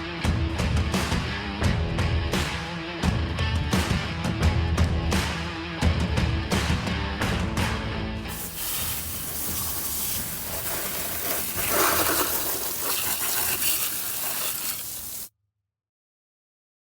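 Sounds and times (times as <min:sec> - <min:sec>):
steady rushing hiss: 0:08.3 - 0:15.3.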